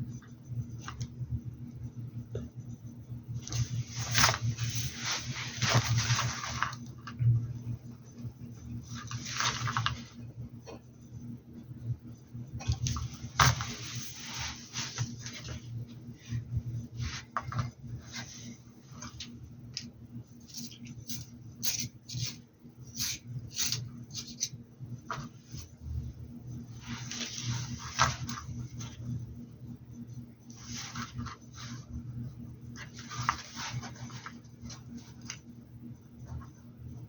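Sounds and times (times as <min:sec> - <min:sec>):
low steady hum: 0:00.0 - 0:37.0
scratchy brush strokes: 0:13.1 - 0:15.6, 0:30.5 - 0:32.0.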